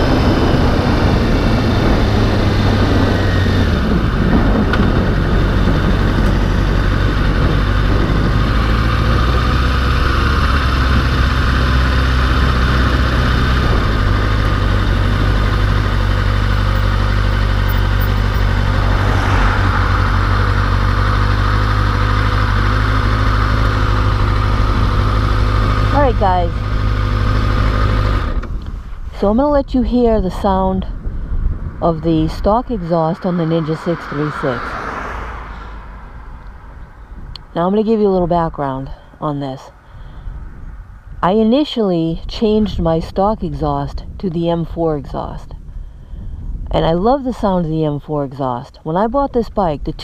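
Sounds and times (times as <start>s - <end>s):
motorcycle engine running: 0.0s - 39.1s.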